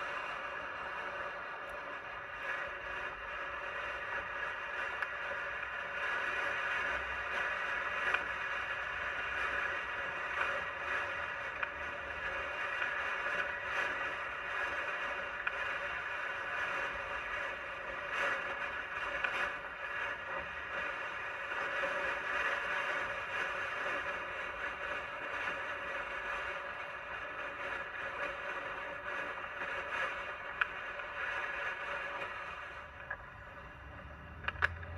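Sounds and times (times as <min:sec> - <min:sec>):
faint steady tones: 0:00.0 - 0:34.9
wind rushing over microphone: 0:28.2 - 0:34.9.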